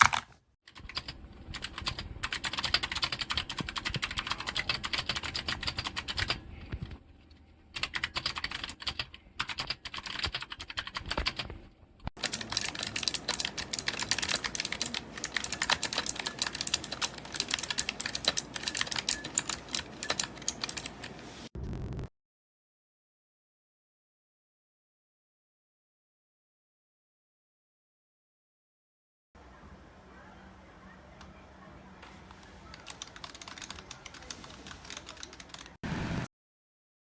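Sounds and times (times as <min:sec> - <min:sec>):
fast typing on clicky keyboard: 0:00.0 - 0:06.4, 0:07.8 - 0:11.5, 0:12.2 - 0:21.2, 0:32.3 - 0:35.8.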